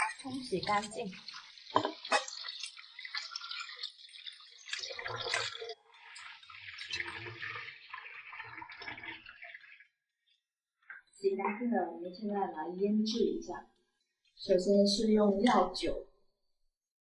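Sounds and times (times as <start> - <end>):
splashing and handling: 0.0 - 11.1
tap water running: 0.0 - 11.1.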